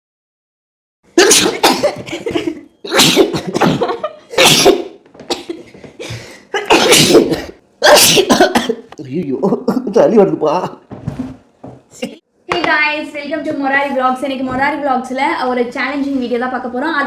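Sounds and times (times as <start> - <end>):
person sneezing: 1.2 - 8.9.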